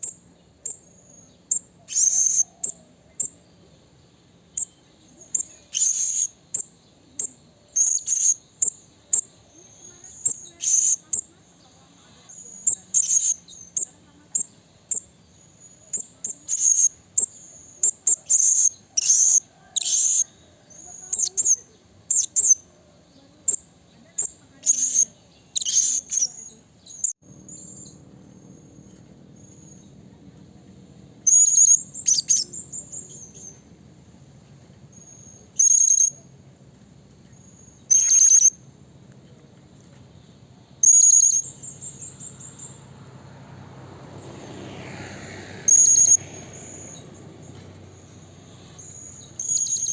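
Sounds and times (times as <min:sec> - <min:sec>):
parrot chirping: 0:00.0 - 0:03.4, 0:04.6 - 0:06.7, 0:07.8 - 0:11.2, 0:12.3 - 0:22.6, 0:23.5 - 0:28.0, 0:31.2 - 0:33.6, 0:35.0 - 0:36.2, 0:37.8 - 0:38.6, 0:40.8 - 0:42.8, 0:45.7 - 0:47.1, 0:48.8 - 0:49.9
faint low hum: 0:25.2 - 0:44.4.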